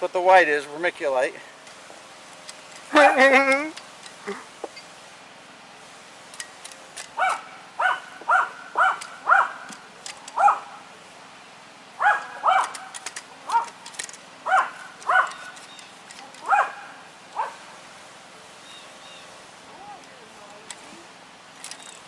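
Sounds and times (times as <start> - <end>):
dog barking: 7.2 - 9.7, 10.4 - 10.8, 12.0 - 12.8, 13.5 - 13.7, 14.4 - 15.4, 16.4 - 17.6.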